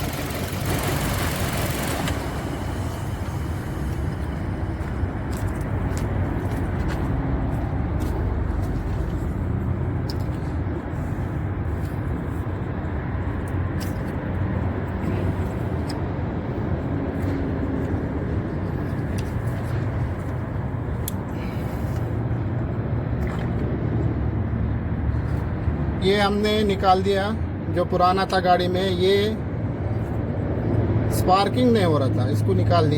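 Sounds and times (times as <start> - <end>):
car engine idling: 0.0 - 5.3.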